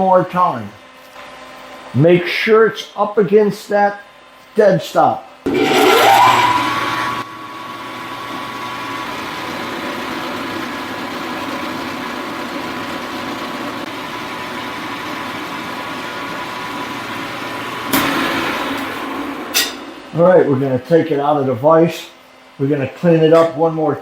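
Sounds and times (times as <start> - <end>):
loud burst of noise: 5.5 - 7.3, 17.8 - 20.6
milling machine whine: 5.5 - 24.0.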